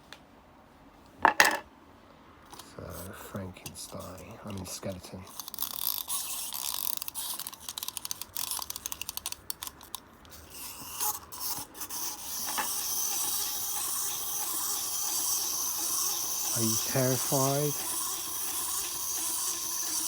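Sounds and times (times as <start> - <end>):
clockwork toys clicking: 4.5 - 20.0
steady high hiss: 16.4 - 17.8.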